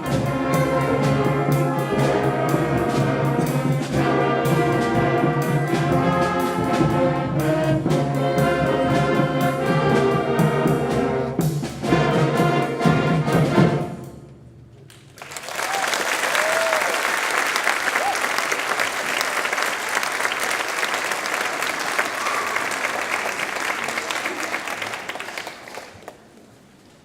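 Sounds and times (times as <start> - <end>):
concert band playing: 0.0 - 14.7.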